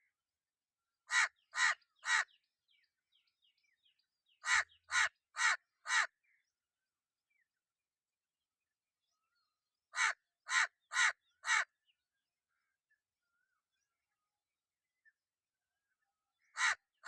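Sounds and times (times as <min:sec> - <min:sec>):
crow cawing: 0:01.1 - 0:02.4, 0:04.4 - 0:06.1, 0:09.9 - 0:11.7, 0:16.5 - 0:16.8.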